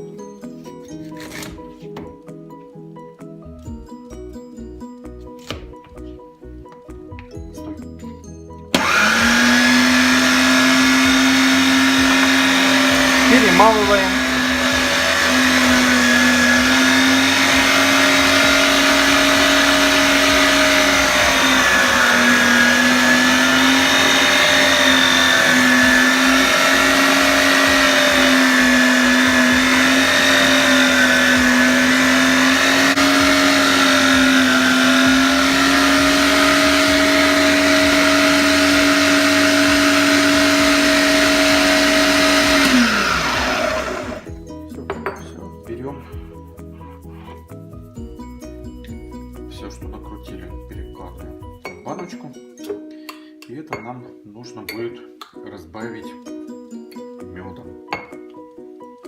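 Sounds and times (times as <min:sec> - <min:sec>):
electric meat grinder motor hum: 0:08.8 - 0:44.4.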